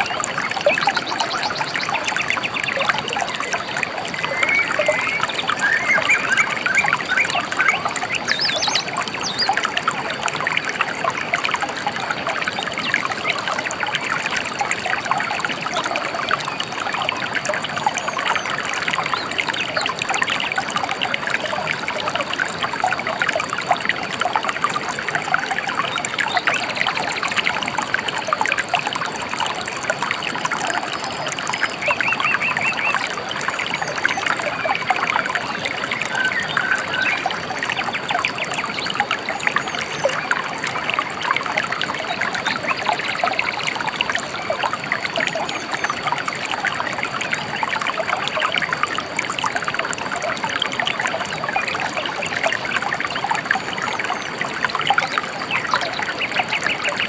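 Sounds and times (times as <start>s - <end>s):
river water babbling: 0.0s - 57.0s
bird chirps: 2.8s - 9.5s, 35.9s - 37.8s.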